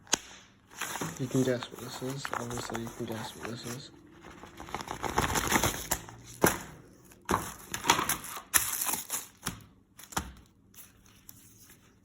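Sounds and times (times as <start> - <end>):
packaging rustling and crackling: 0.7 - 10.1.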